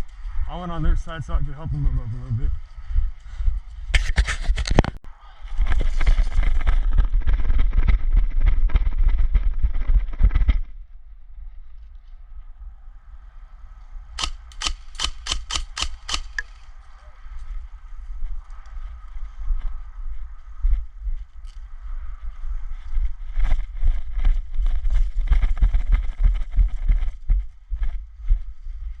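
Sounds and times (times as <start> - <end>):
airsoft gun bursts: 14.2 - 16.5.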